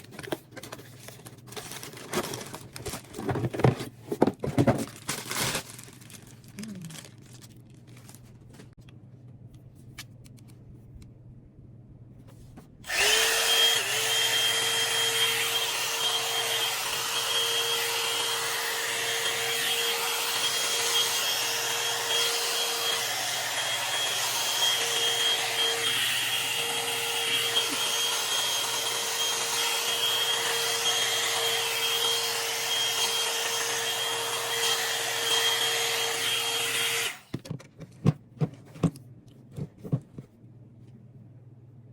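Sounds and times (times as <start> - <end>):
hair dryer running: 12.8 - 37.3.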